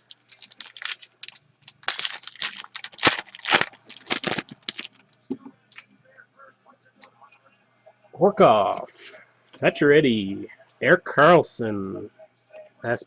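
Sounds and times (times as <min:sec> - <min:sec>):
wrapper tearing and crinkling: 0:00.0 - 0:05.1.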